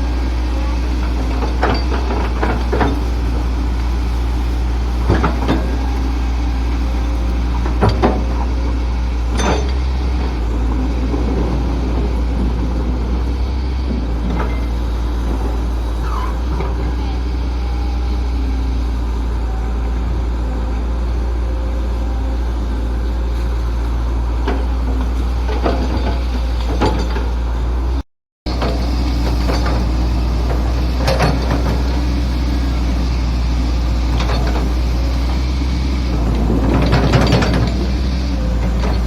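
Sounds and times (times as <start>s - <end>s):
excavator diesel engine running: 0.0s - 39.0s
metallic clanks and knocks: 1.0s - 3.1s, 25.4s - 27.4s.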